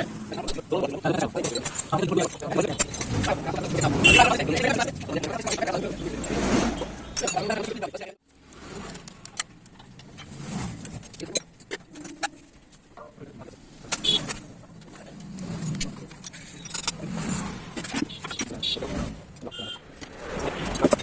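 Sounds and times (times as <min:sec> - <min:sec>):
passing vehicle rumble: 0:02.7 - 0:07.2, 0:13.6 - 0:21.0.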